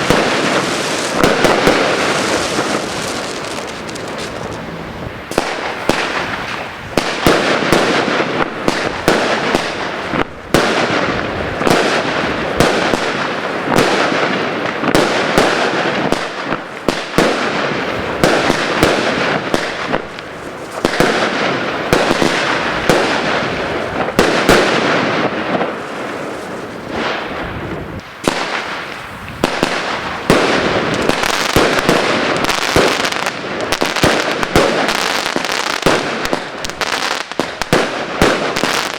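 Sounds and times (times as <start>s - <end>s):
fireworks crackling: 0.0s - 38.9s
fireworks sharp bangs: 0.0s - 38.9s.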